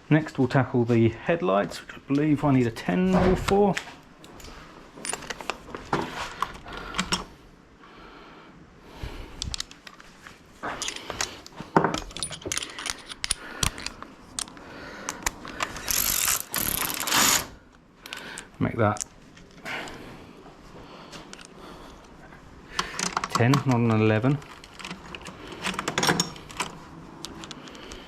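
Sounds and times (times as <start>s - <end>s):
metal tools clinking: 5.0s - 5.7s, 10.6s - 14.5s
socket ratchet clicking: 10.8s - 17.5s.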